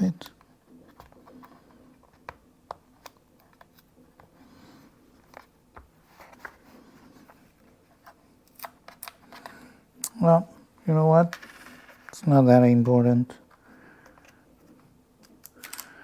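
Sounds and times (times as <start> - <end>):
faint handling noise: 0.2 - 16.0.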